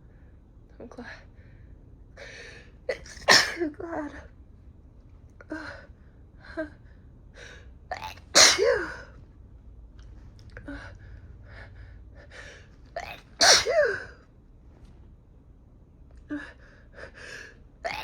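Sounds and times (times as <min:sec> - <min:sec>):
woman sneezing loudly: 0:02.9 - 0:03.7, 0:08.4 - 0:09.0, 0:13.0 - 0:14.1.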